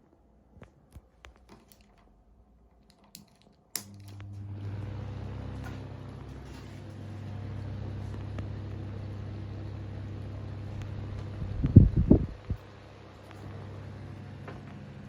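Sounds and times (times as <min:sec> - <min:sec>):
electric fan motor hum: 0:03.7 - 0:15.0.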